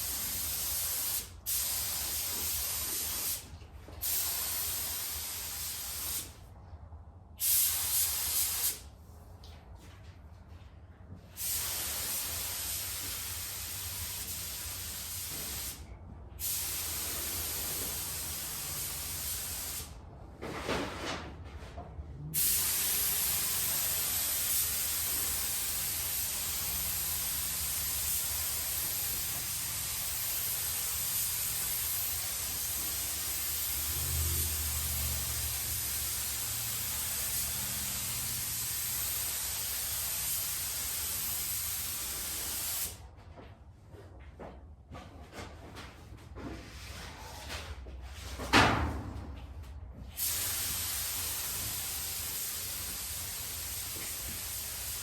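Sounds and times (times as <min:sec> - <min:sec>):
paint spray gun hissing: 0:22.4 - 0:33.8, 0:35.2 - 0:43.0, 0:50.2 - 0:55.0.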